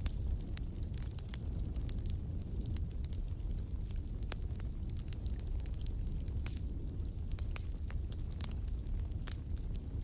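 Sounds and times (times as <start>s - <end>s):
fire crackling pops: 0.0s - 10.0s
fire rumbling: 0.0s - 10.0s.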